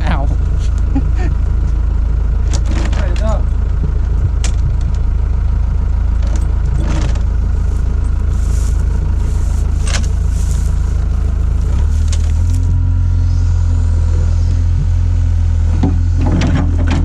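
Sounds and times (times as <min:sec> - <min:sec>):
excavator diesel engine droning: 0:00.0 - 0:17.0
metal clanks and scrapes: 0:06.3 - 0:10.9.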